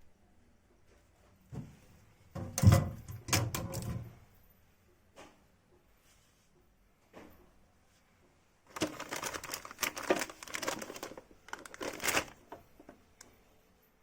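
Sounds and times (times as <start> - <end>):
crinkling and rustling: 7.2 - 13.5.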